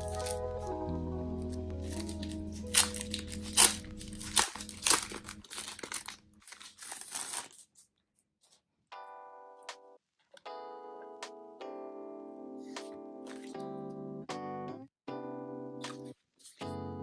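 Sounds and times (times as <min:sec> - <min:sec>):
packaging crinkling: 0:00.0 - 0:00.7, 0:01.4 - 0:08.6
packaging ripping: 0:00.0 - 0:00.7, 0:01.6 - 0:07.9.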